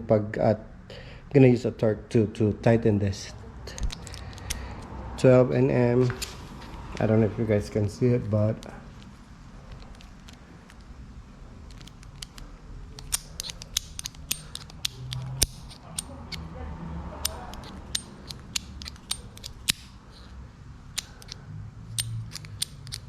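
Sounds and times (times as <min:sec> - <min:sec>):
ratcheting torque wrench clicking: 0:13.0 - 0:16.5, 0:17.2 - 0:20.3, 0:20.9 - 0:23.0.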